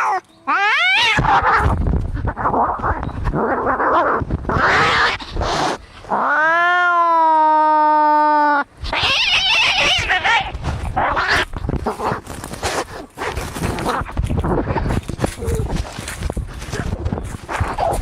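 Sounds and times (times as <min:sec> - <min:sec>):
cat caterwaul: 0:00.0 - 0:01.7, 0:06.2 - 0:10.5
cats snarling: 0:00.0 - 0:06.9, 0:08.8 - 0:18.0
cat screeching: 0:00.0 - 0:11.5
cats yowling: 0:00.0 - 0:11.5.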